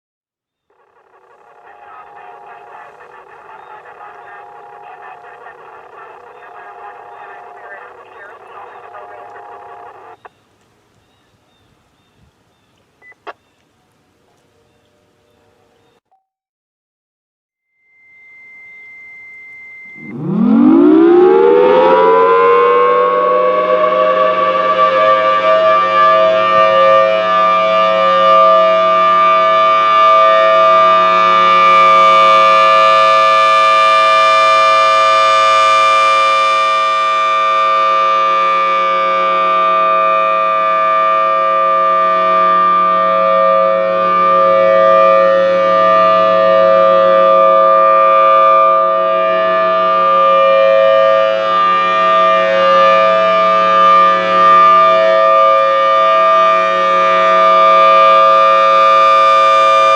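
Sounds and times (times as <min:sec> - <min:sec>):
rotating warning siren: 0:00.7 - 0:10.3, 0:18.4 - 0:59.9.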